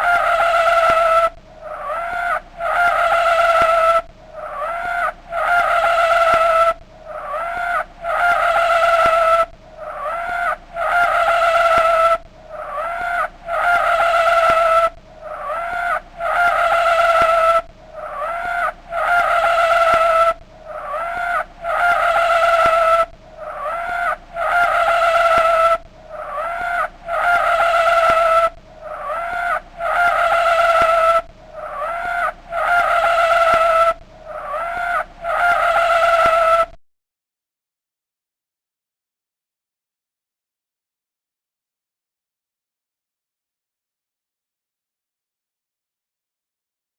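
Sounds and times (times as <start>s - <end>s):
truck tyres spinning whine: 0.0s - 36.4s.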